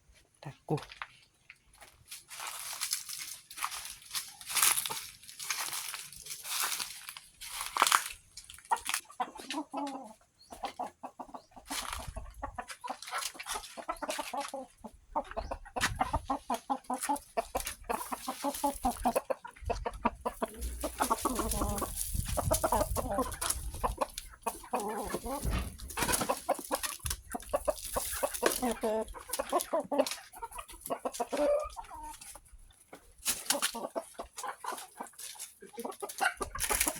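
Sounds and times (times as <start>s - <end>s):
chickens clucking: 0.0s - 36.9s
low thumps: 25.2s - 26.2s.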